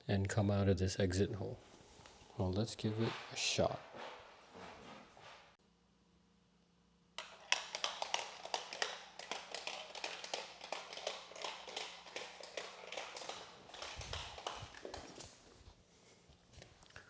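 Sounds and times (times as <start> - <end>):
marble clicking down plastic run: 7.2 - 15.1.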